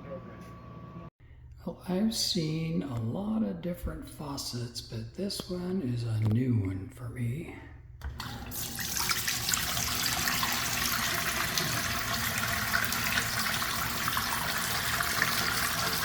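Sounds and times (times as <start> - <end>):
faucet water running: 8.0 - 16.0.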